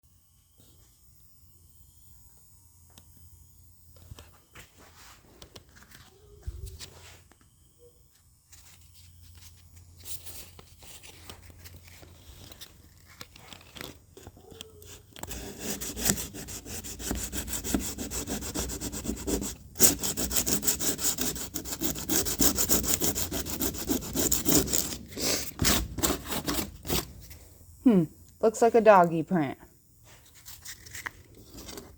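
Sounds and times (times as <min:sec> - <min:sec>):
hand sanding rubbing strokes: 0:14.9 - 0:27.1.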